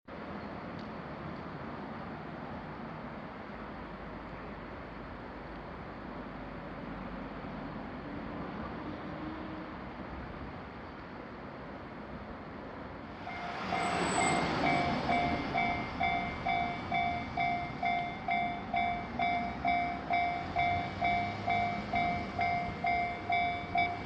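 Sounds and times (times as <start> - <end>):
rush of noise: 12.8 - 24.0
level-crossing warning bell: 13.2 - 24.0.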